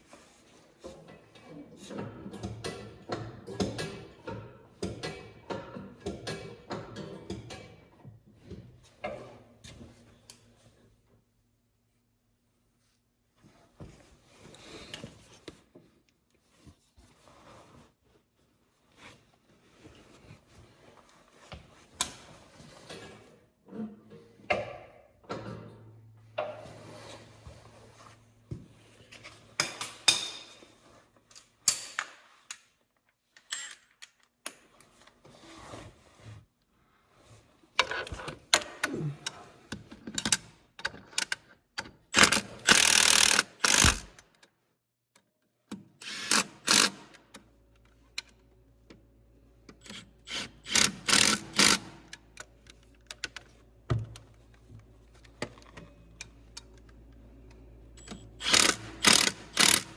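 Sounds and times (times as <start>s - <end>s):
hand tools and metal parts clinking: 58.0s - 59.9s.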